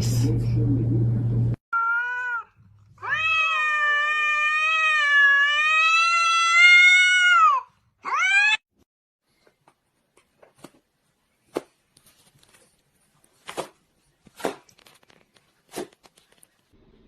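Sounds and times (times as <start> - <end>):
cat meowing: 1.8 - 8.6.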